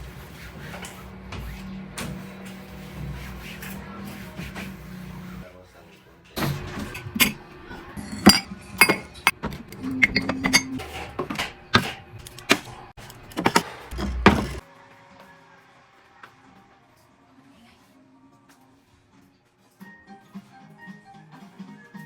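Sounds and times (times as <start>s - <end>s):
dishes and glassware clinking: 6.4s - 11.9s, 13.4s - 14.6s.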